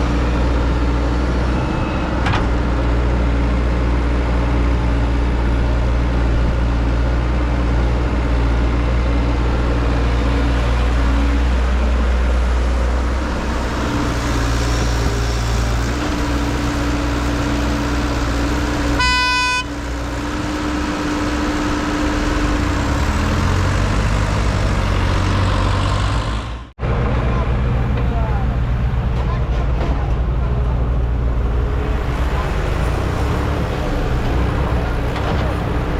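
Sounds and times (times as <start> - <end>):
heavy vehicle engine humming: 0.0 - 35.9
horn toot: 19.0 - 19.7.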